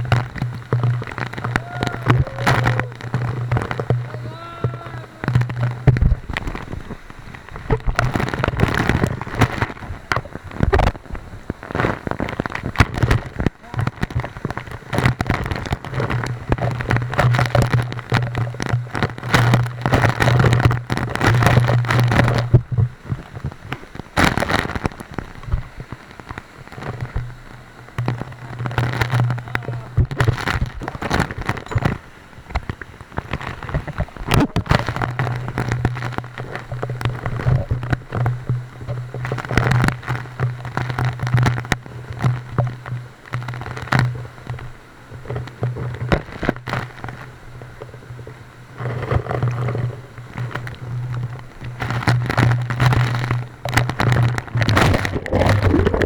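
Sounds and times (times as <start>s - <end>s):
waterfall splashing: 0.0s - 18.9s, 54.7s - 56.0s
low steady hum: 0.0s - 24.2s, 25.1s - 56.0s.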